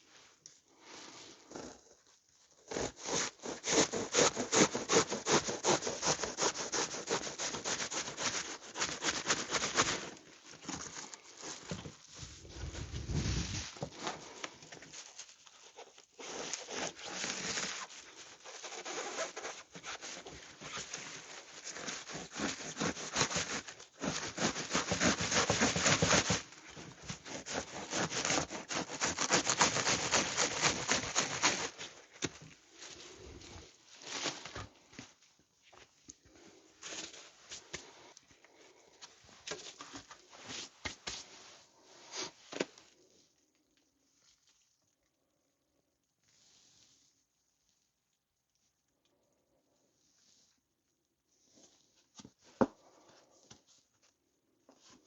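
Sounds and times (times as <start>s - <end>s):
hand saw rasping through foam: 2.7s - 10.8s, 15.7s - 32.4s.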